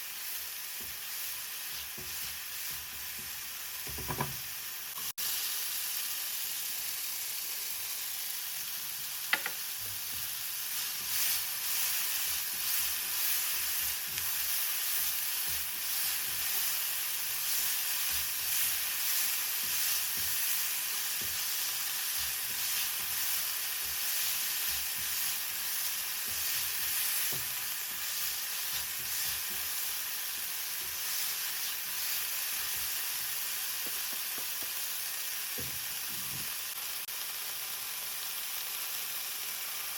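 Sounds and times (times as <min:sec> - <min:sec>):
food sizzling in a pan: 0:00.0 - 0:39.9.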